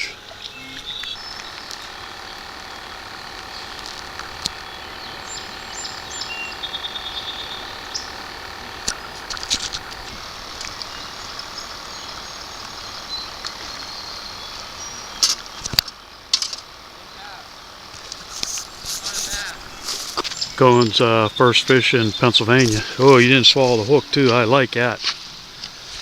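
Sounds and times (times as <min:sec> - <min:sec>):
sharp clicks: 0:00.0 - 0:16.7
birds chirping: 0:00.0 - 0:26.0
steady hum: 0:00.0 - 0:26.0.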